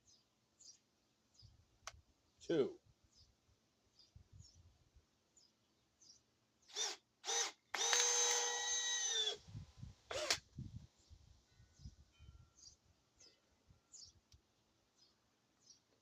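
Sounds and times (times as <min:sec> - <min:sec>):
cordless drill driving screws: 0:06.7 - 0:09.4, 0:10.1 - 0:10.4.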